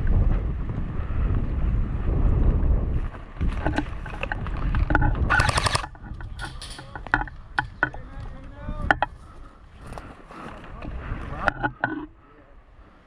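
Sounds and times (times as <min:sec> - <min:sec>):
wind buffeting microphone: 0:00.0 - 0:13.0
short rapid rattle: 0:03.6 - 0:08.0
sharp clicks: 0:03.7 - 0:09.2.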